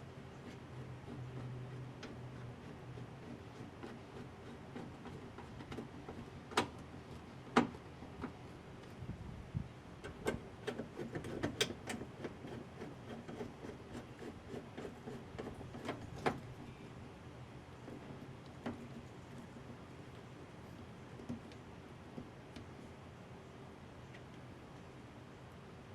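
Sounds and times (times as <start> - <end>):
light clicks and knocks: 17.8 - 20.3.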